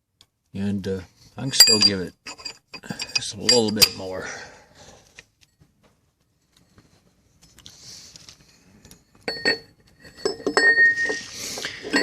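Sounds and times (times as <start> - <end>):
small steel parts clinking: 1.5 - 4.0.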